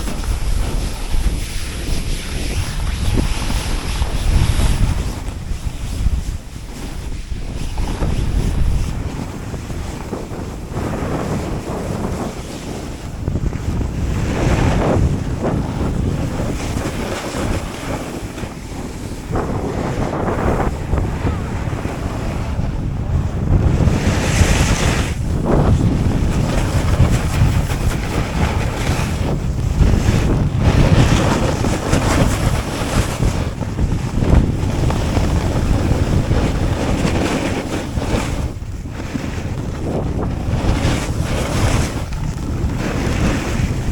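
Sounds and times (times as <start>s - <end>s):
snowboard scraping over snow: 0.0s - 43.9s
wind rushing over microphone: 0.0s - 43.9s.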